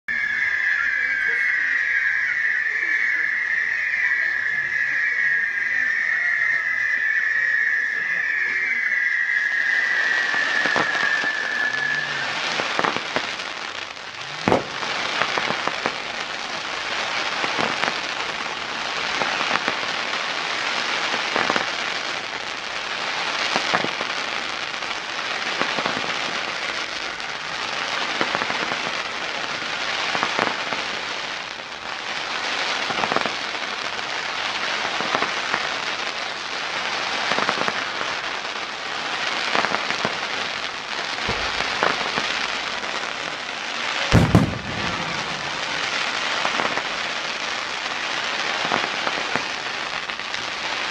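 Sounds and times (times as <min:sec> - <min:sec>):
firework whistle: 0:00.0 - 0:50.9
fireworks crackling and popping: 0:00.0 - 0:50.9
loud firework bang: 0:14.3 - 0:16.1, 0:41.2 - 0:42.6, 0:44.0 - 0:47.2.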